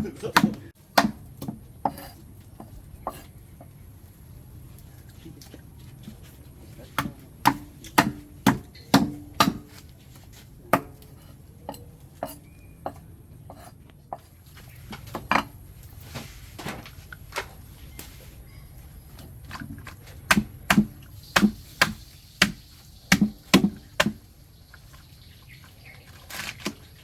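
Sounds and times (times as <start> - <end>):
knife chopping on cutting board: 0.0 - 2.1, 7.0 - 9.8, 20.3 - 24.2.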